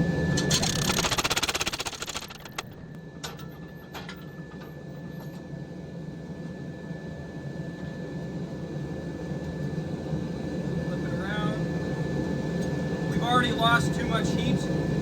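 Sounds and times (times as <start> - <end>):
machine hum with high whine: 0.0 - 6.0
power hammer pounding metal: 0.5 - 2.8.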